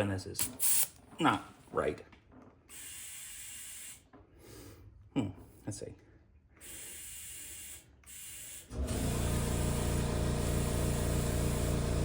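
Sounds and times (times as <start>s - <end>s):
air hissing at tire valve: 2.7s - 4.0s, 6.6s - 11.8s
tire inflator compressor buzzing: 2.7s - 4.0s, 6.6s - 12.0s.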